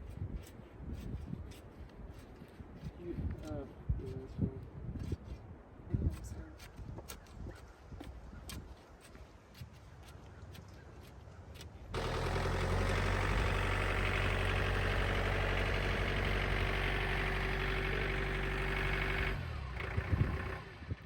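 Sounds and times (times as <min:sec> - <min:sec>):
engine running steadily: 0:11.9 - 0:21.0.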